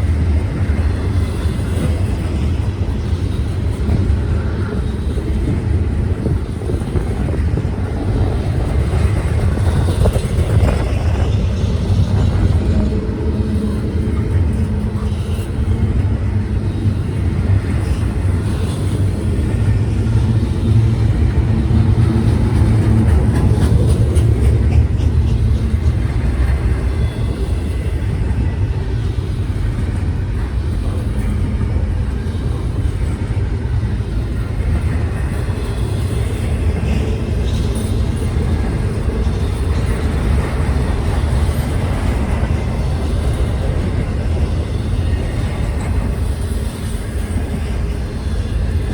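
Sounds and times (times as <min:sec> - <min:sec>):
train rumbling by: 0:00.0 - 0:48.9.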